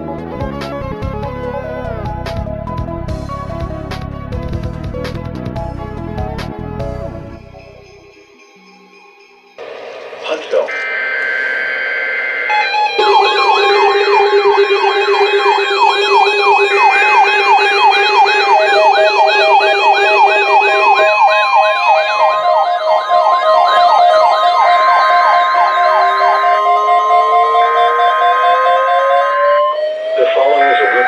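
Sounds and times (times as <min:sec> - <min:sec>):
steady alert tones: 0:09.6 - 0:27.1
fast wailing siren sweep: 0:09.6 - 0:31.0
long steady beep: 0:09.6 - 0:31.0.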